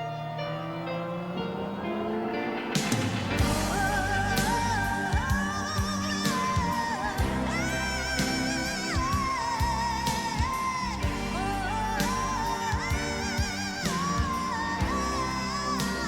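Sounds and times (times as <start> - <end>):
sustained low chords: 0.0 - 16.0.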